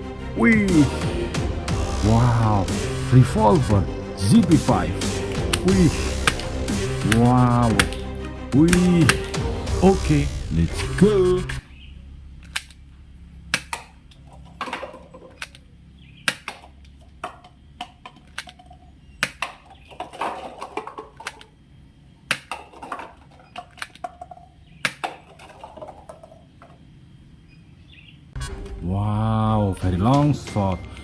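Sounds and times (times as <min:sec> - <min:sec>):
handling noise: 0:02.2 - 0:27.6
plastic toy gun clicks: 0:15.4 - 0:15.6, 0:18.1 - 0:19.5, 0:23.7 - 0:24.0.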